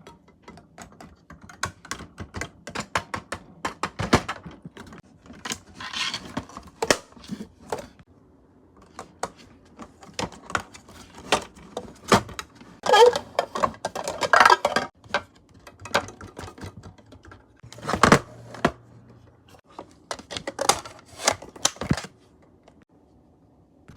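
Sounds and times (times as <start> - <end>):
rustling and scraping: 4.8 - 8.1, 8.8 - 22.3.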